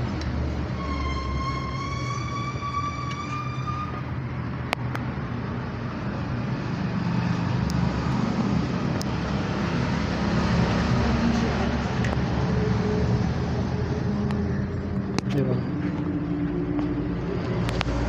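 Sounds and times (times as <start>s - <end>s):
road traffic passing: 0.0s - 18.0s
high whistling tone: 0.8s - 4.0s.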